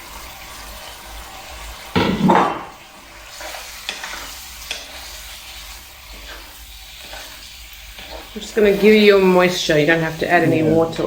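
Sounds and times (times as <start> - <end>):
food sizzling in hot oil: 0.0 - 11.0
spoon tapping on pan: 2.0 - 2.7.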